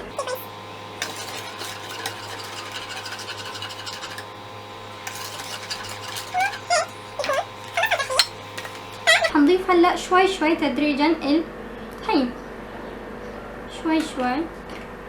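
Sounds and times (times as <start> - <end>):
utensil scraping and tapping bowl: 0.1 - 9.3.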